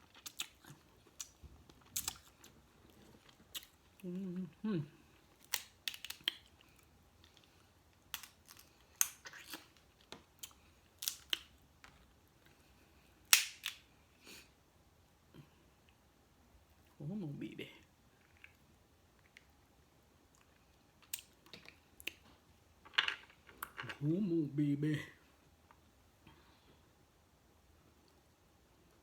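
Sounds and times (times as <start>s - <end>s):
crab shells cracking: 5.3s - 6.8s, 8.0s - 11.6s, 13.3s - 13.9s.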